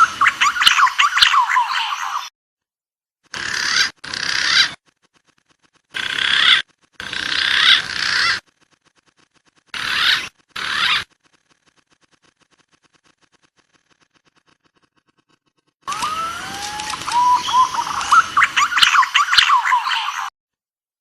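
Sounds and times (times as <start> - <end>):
pigeon calls squealing: 0.0 - 2.3, 3.3 - 4.8, 6.0 - 8.4, 9.7 - 11.1, 15.9 - 20.3.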